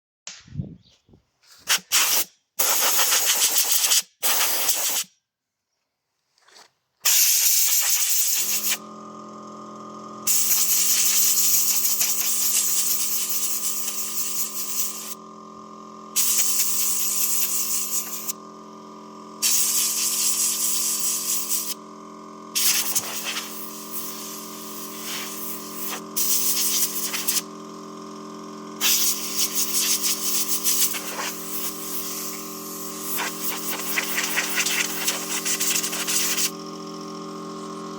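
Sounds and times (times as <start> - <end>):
air compressor humming: 1.6 - 5.1, 7.0 - 37.9
compressed air blasts hissing: 1.6 - 5.1, 7.0 - 8.8, 10.2 - 15.2, 16.1 - 18.4, 19.4 - 21.8, 22.5 - 27.5, 28.8 - 36.6.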